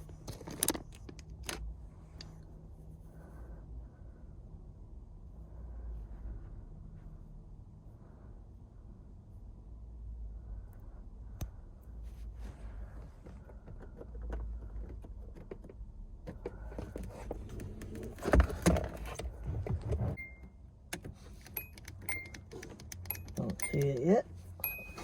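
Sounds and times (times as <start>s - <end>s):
keys rattling and clicking: 0.0s - 1.6s, 21.2s - 25.0s.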